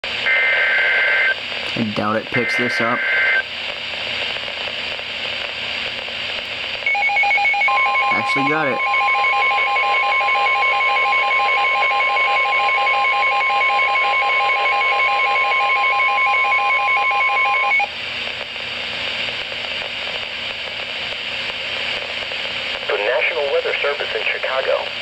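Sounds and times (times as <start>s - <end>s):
radio channel hiss: 0.0s - 6.8s, 8.1s - 8.9s, 18.1s - 25.0s
steady warning alarm tone: 2.3s - 3.4s, 6.9s - 17.9s.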